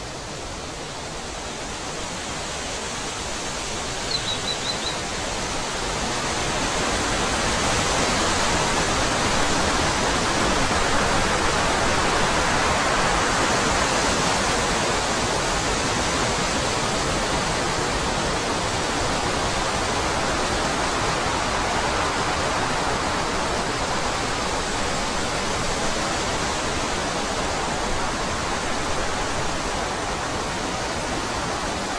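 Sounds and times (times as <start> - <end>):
wind blowing: 3.1 - 31.9
high chirps: 4.1 - 5.0.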